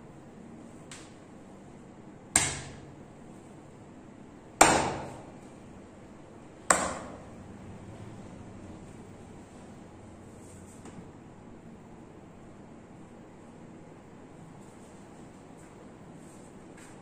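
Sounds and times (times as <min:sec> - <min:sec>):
hand slapping body: 0:02.4 - 0:02.9.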